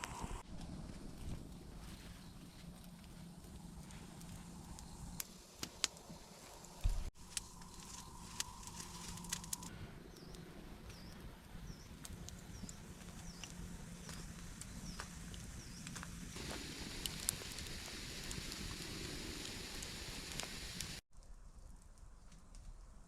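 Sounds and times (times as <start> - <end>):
sharp snaps and clicks: 2.9 - 6.1, 6.8 - 21.0.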